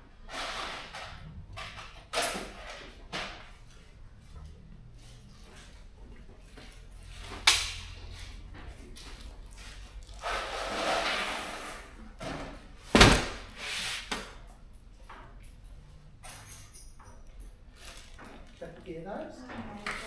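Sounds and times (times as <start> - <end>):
rustling and sliding: 6.5 - 14.4
knocks of boxes set down: 12.3 - 13.6.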